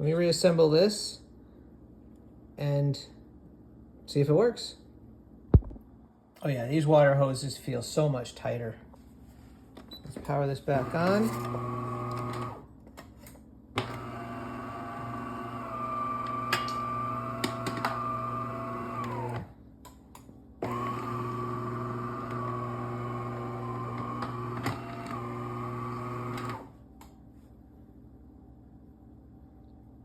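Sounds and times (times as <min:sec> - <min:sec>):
espresso machine motor hum: 0:10.7 - 0:12.6, 0:13.8 - 0:19.5, 0:20.6 - 0:26.7.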